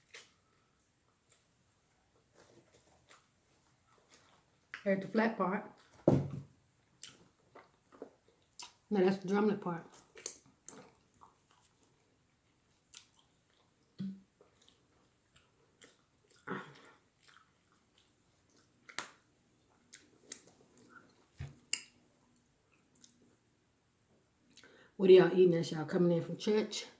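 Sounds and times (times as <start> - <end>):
low thump: 6.1 - 6.5
chewing mouth clicks: 7.0 - 8.8, 10.0 - 22.0, 22.7 - 23.2.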